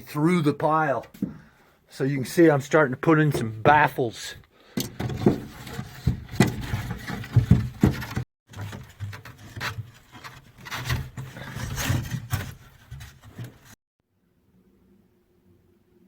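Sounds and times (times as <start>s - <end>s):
wooden boards knocking and scraping: 4.8s - 13.8s.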